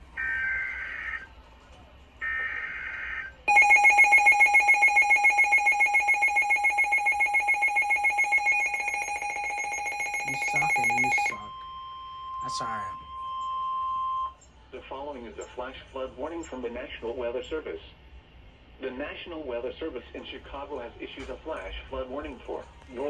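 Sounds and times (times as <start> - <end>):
pulsing alert tone beeps: 3.5 - 11.6.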